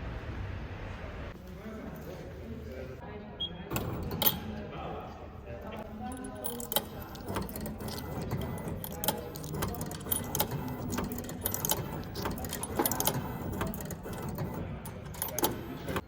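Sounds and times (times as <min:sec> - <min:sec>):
background murmur: 0:00.6 - 0:16.0
sharp clinks and clatters: 0:06.0 - 0:16.0.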